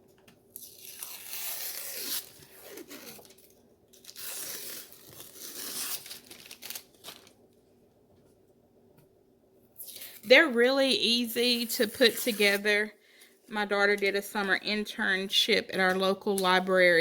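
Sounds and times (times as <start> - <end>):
paper tearing: 0.5 - 7.3
paper crinkling: 0.5 - 7.6.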